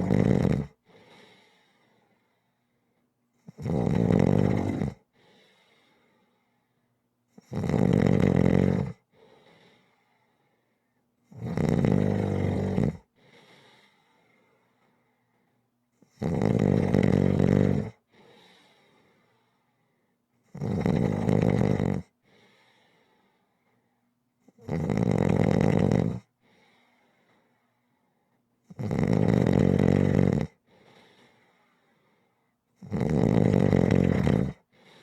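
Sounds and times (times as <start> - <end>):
person snoring: 0.0 - 0.8, 3.5 - 5.0, 7.4 - 9.0, 11.3 - 13.1, 16.1 - 18.0, 20.5 - 22.1, 24.6 - 26.3, 28.7 - 30.6, 32.8 - 35.0
faint breath: 0.8 - 3.2, 5.1 - 7.0, 9.0 - 11.1, 13.1 - 15.7, 18.0 - 20.3, 22.2 - 24.2, 26.4 - 28.5, 30.6 - 32.6, 34.6 - 35.0.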